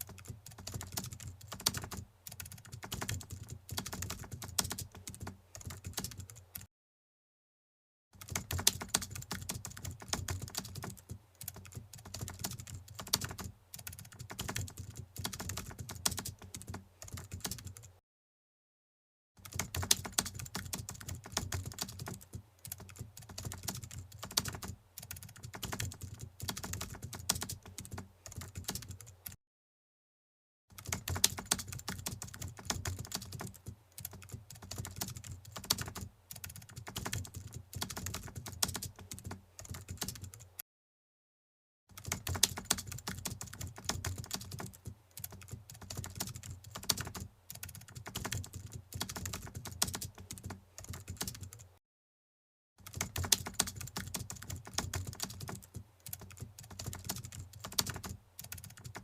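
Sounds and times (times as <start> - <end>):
rapid keyboard typing: 0.0 - 6.7, 8.2 - 18.0, 19.4 - 29.4, 30.7 - 40.6, 41.9 - 51.8, 52.8 - 59.0.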